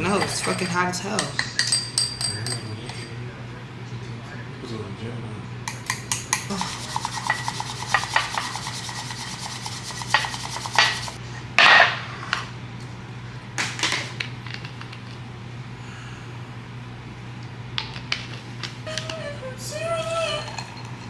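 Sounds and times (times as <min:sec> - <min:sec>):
kitchen utensils clicking: 0:00.0 - 0:03.2, 0:05.7 - 0:11.9
whisk scraping in cup: 0:05.7 - 0:11.2.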